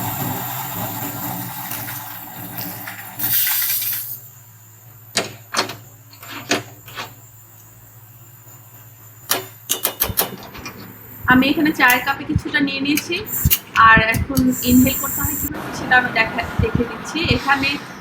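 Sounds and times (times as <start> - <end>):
low hum: 10.3 - 18.0.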